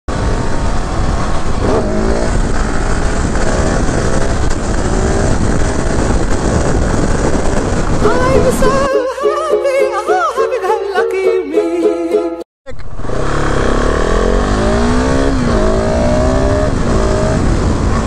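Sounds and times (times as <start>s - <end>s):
motorcycle engine revving: 0.1s - 8.7s, 12.8s - 18.0s.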